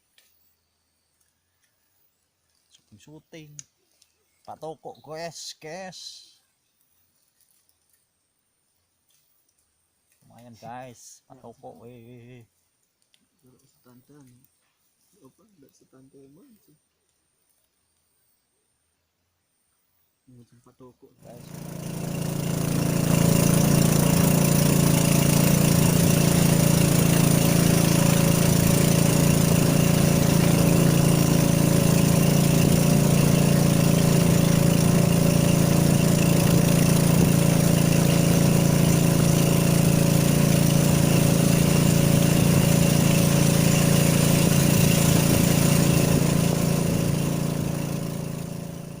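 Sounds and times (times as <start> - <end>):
steady engine-like hum: 21.2 - 49.0.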